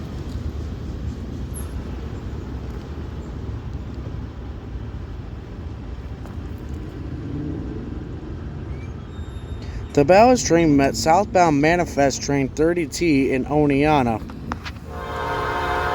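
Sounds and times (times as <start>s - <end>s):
train rolling past rumbling: 11.0s - 15.9s.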